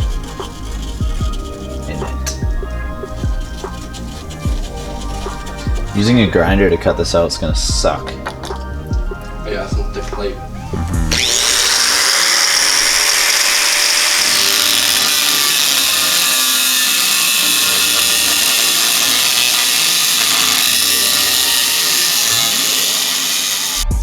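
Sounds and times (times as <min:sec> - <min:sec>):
angle grinder cutting metal: 0:00.0 - 0:24.0.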